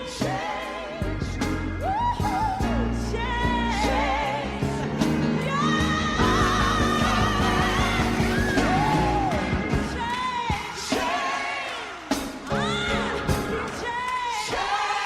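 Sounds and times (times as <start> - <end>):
instrumental backing with low bass: 0.0 - 10.3.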